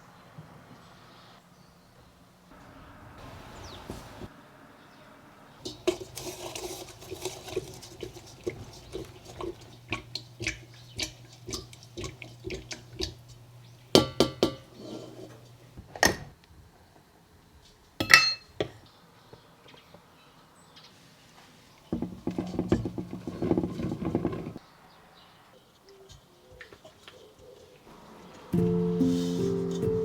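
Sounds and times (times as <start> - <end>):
dishware clattering: 5.6 - 16.2, 18.0 - 18.8
utensils tapping and clinking: 5.6 - 16.2, 18.0 - 18.8, 21.9 - 24.6.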